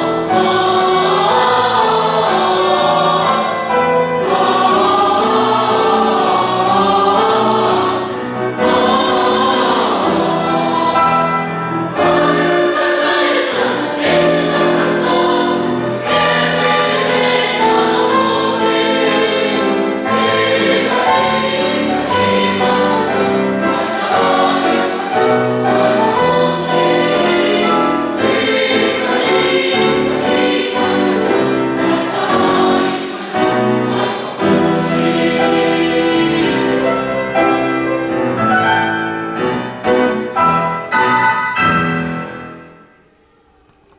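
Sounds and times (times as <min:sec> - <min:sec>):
boys choir singing: 0:00.0 - 0:38.2.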